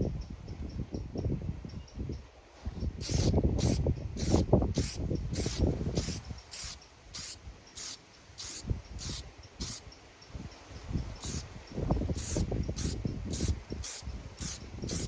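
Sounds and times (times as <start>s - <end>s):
wind buffeting microphone: 0.0s - 15.0s
aerosol spray paint hissing: 3.0s - 9.9s, 11.1s - 15.0s.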